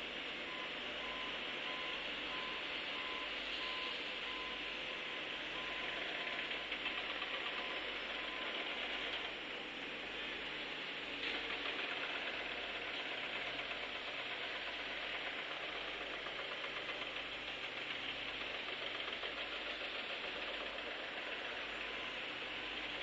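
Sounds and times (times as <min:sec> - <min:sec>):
construction machinery engine running: 0:00.0 - 0:23.0
rapid knocking rattle: 0:05.8 - 0:09.4, 0:11.2 - 0:23.0.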